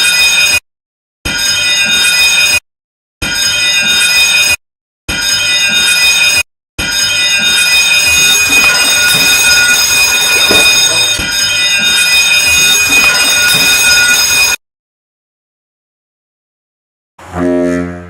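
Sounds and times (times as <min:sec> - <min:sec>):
safety alarm ringing: 0:05.2 - 0:14.6.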